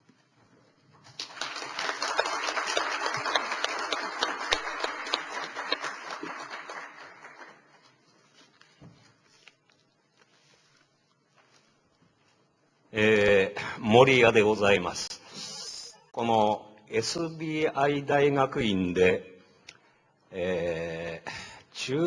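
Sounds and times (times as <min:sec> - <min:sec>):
audience applauding: 0:01.1 - 0:07.9.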